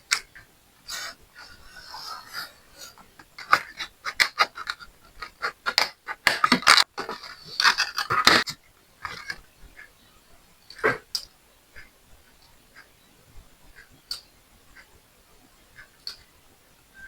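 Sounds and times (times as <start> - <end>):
sharp plastic clicks: 3.2 - 9.9.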